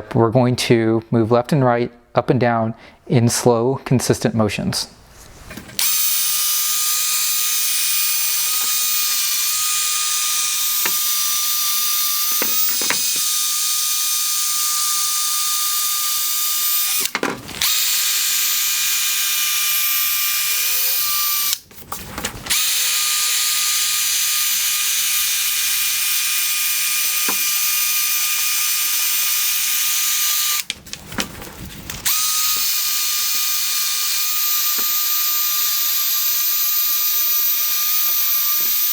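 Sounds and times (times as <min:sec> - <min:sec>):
drill sanding plastic: 0:05.8 - 0:21.6, 0:22.5 - 0:30.8, 0:32.0 - 0:38.9.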